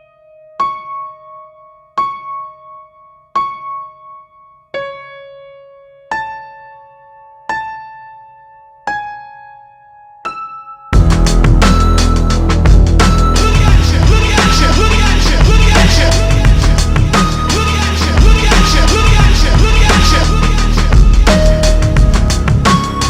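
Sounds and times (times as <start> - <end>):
electronic music with heavy beat: 11.0 - 23.0.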